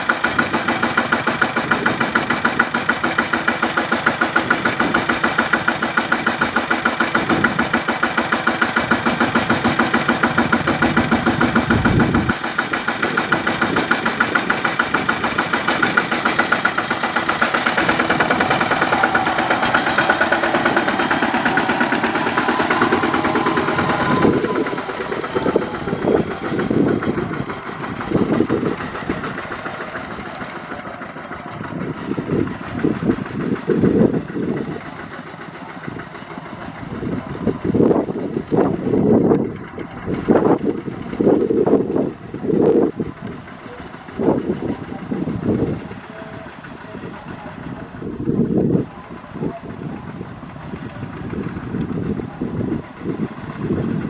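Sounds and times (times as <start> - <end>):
diesel tractor engine running: 0.0 - 54.0.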